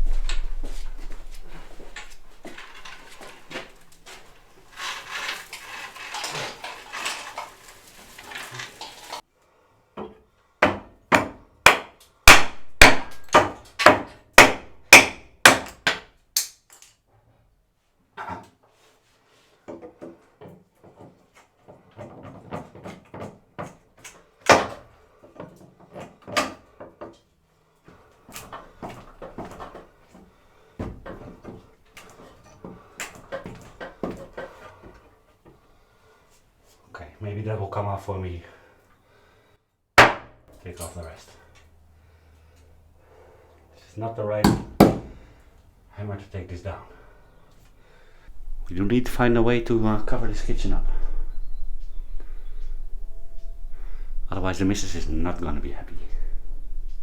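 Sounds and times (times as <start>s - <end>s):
loose wood scraping and rattling: 0.0s - 9.2s, 19.8s - 24.2s, 27.9s - 35.7s
wood knocks and clatter: 0.0s - 9.2s, 19.7s - 27.2s, 28.3s - 35.6s
hammer striking wood: 10.6s - 16.1s, 24.5s - 24.8s, 40.0s - 40.3s, 44.4s - 45.2s.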